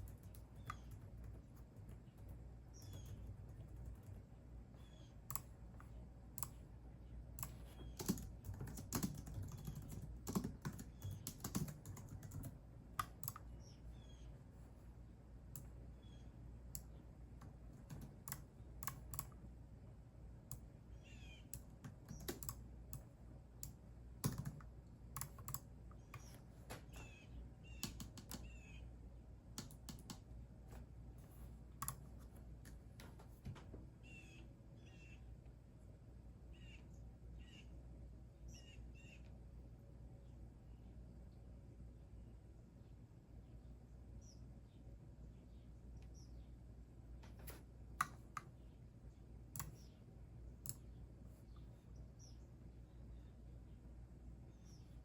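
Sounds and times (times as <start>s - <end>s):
typing on computer keyboard: 0.0s - 4.2s, 7.4s - 13.5s, 17.4s - 19.4s, 21.6s - 26.3s, 27.8s - 28.5s, 29.6s - 30.2s
faint bird chirps: 0.0s - 5.6s, 6.4s - 14.9s, 15.6s - 17.1s, 20.5s - 23.0s, 25.2s - 29.0s, 34.0s - 35.4s, 36.4s - 39.4s, 42.8s - 46.6s, 49.6s - 55.0s.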